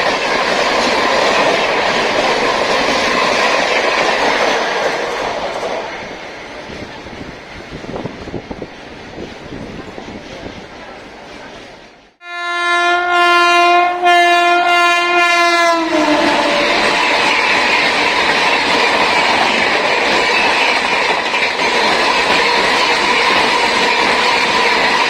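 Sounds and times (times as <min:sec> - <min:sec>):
train wheels rushing past: 0:00.0 - 0:12.2, 0:15.0 - 0:25.0
train horn blast: 0:12.2 - 0:17.4.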